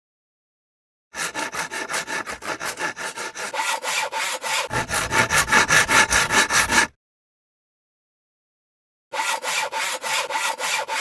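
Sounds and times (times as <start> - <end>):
hand saw cutting wood: 1.2 - 7.0, 9.2 - 11.0.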